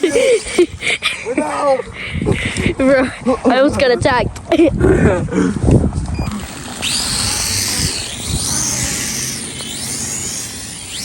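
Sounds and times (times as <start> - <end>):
drone propellers whirring: 6.0 - 11.0.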